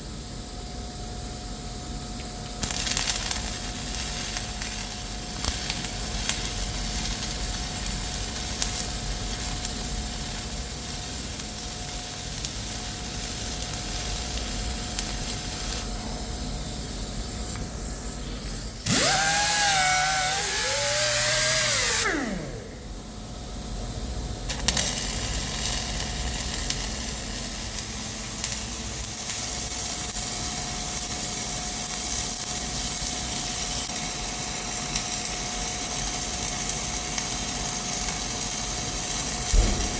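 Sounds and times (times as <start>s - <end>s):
workshop machine hum: 15.0s - 23.6s
power tool running and spinning down: 18.4s - 23.2s.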